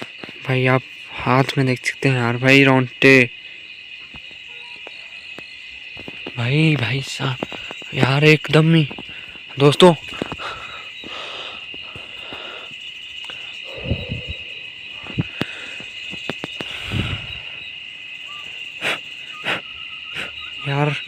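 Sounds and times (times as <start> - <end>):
crickets chirping: 0.0 - 21.0
low breathy swells: 13.5 - 15.8.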